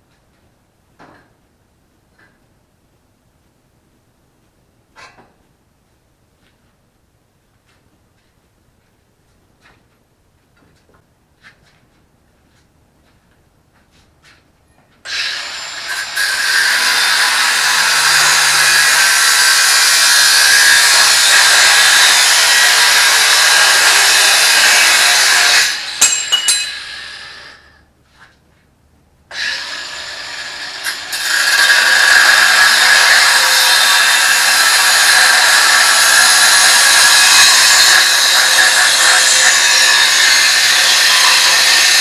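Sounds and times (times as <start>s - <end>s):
angle grinder running: 15.1s - 27.6s, 29.3s - 42.0s.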